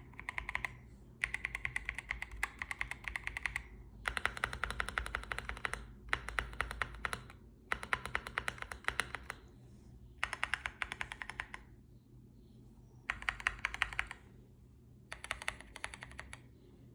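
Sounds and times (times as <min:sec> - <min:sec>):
mechanical keyboard typing: 0:00.0 - 0:09.4, 0:10.2 - 0:11.7, 0:13.1 - 0:14.2, 0:15.1 - 0:16.5.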